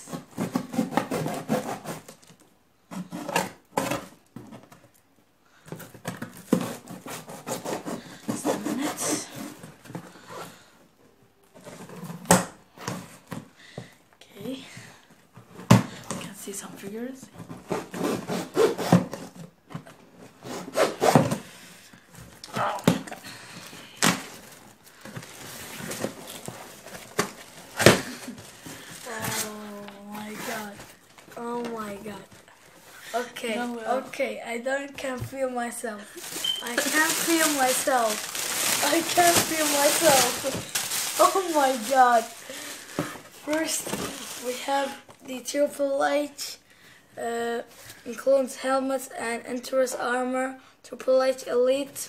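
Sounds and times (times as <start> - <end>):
cardboard box rustling and crackling: 24.2 - 32.7, 36.2 - 45.1.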